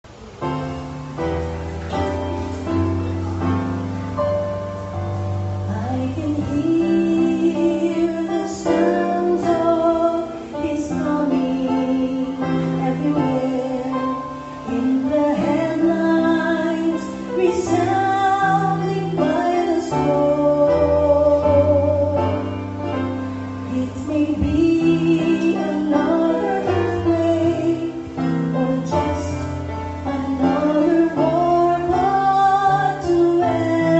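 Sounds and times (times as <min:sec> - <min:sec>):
instrumental accompaniment: 0:00.0 - 0:33.9
vocal quartet singing gospel: 0:05.7 - 0:22.2, 0:23.7 - 0:33.9.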